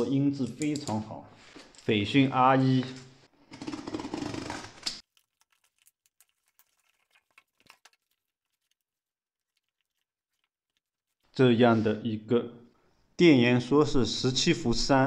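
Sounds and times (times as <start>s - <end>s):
faint clicks of objects handled: 0.4s - 1.9s.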